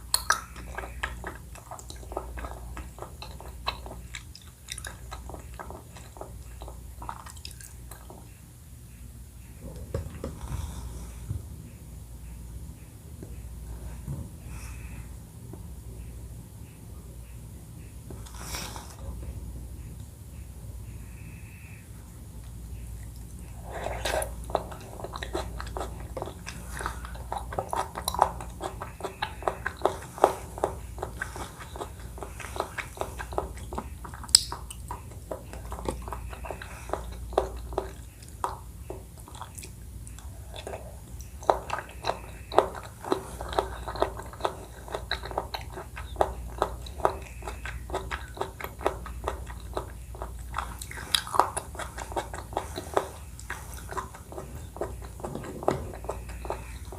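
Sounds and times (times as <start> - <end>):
wet chewing mouth clicks: 0.0 - 8.4, 22.4 - 56.9.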